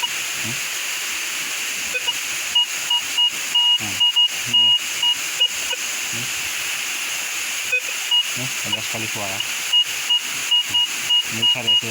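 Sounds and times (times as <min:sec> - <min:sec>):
waterfall and stream rushing: 0:00.0 - 0:11.9
metal detector beeps: 0:01.9 - 0:05.8, 0:07.7 - 0:09.0, 0:09.7 - 0:11.9.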